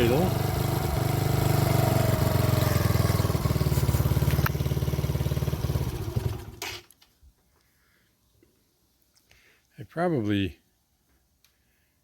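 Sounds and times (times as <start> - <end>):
small engine idling: 0.0 - 6.9
engine stopping click: 2.0 - 6.9.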